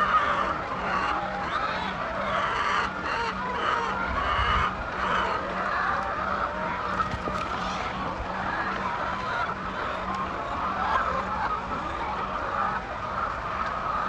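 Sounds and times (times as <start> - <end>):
steady low hum: 6.8 - 9.8
hens clucking: 6.9 - 9.4.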